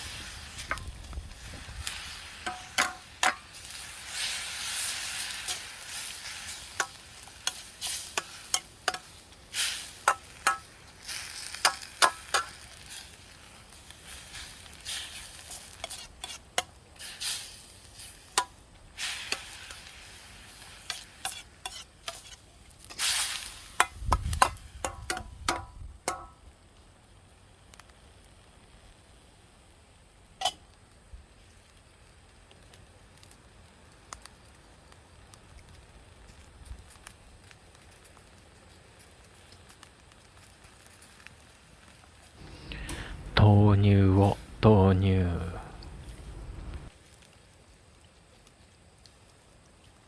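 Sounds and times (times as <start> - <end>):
food sizzling in a pan: 0.0 - 26.3
metal utensil clinking on pan: 2.4 - 3.4.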